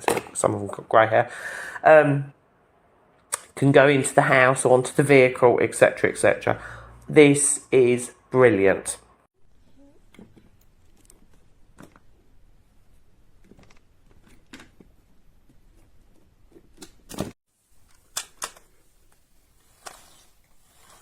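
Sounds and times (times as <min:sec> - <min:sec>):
plastic building tiles clicking: 0:17.9 - 0:18.7.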